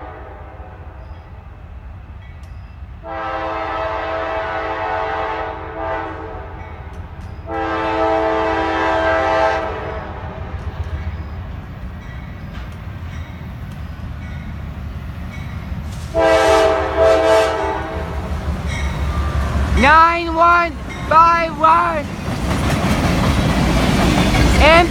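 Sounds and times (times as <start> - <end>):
locomotive air horn blasts: 0.0 - 0.8, 3.0 - 6.6, 7.5 - 10.2, 16.1 - 18.2
passing train rumble: 0.0 - 24.9.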